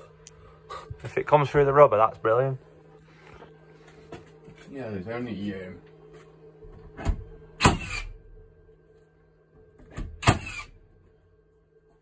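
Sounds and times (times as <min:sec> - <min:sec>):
nail gun firing: 0:07.6 - 0:08.1, 0:10.2 - 0:10.7.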